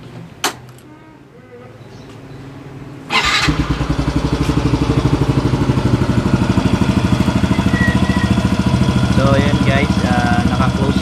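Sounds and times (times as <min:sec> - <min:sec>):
scooter engine starting and idling: 0:03.1 - 0:11.0.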